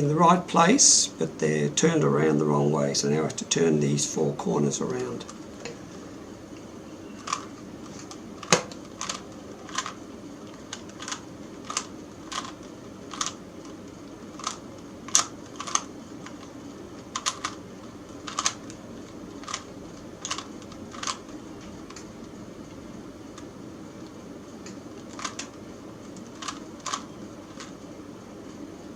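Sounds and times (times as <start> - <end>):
plastic puzzle cube clicking: 7.2 - 10.0, 10.7 - 16.5, 17.2 - 17.6, 18.3 - 18.8, 19.4 - 21.3, 25.0 - 25.6, 26.2 - 27.7.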